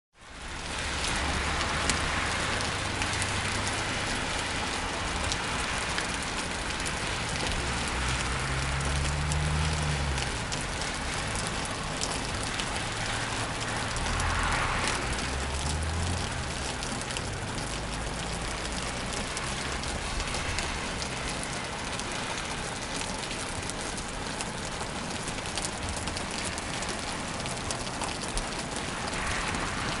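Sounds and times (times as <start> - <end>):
rain pattering on a car: 0.1 - 30.0.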